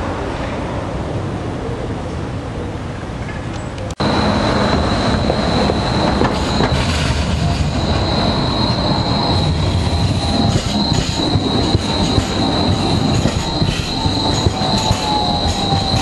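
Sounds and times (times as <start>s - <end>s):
rail vehicle rumble: 0.0s - 16.0s
traffic noise: 0.0s - 16.0s
wheels squealing on rails: 4.0s - 16.0s.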